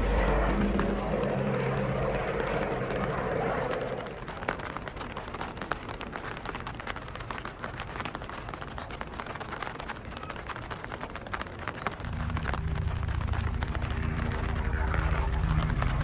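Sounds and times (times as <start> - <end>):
rain hissing: 0.0 - 5.3, 12.0 - 16.0
low hum: 0.0 - 5.7, 11.9 - 16.0
raindrop ticks: 0.0 - 16.0.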